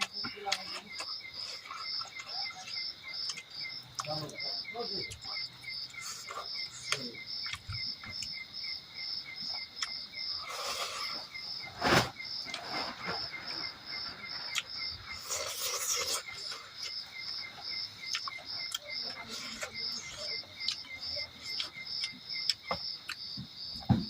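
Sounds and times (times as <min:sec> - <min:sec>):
person chewing food: 0:00.0 - 0:04.4, 0:05.1 - 0:08.4, 0:09.4 - 0:11.3, 0:14.4 - 0:23.4
insects chirping: 0:00.0 - 0:24.0
rustling: 0:10.5 - 0:14.6.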